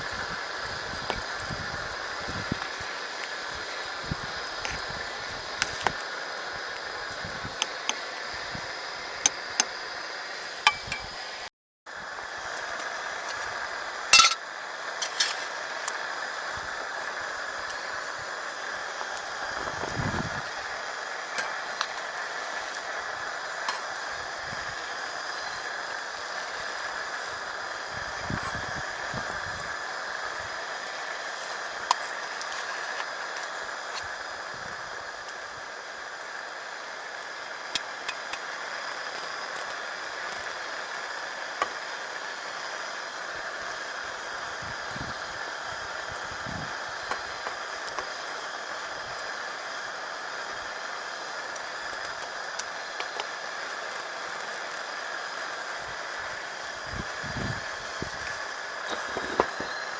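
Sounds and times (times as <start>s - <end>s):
campfire crackling: 0.0s - 59.9s
high-pitched whirr: 56.6s - 59.9s.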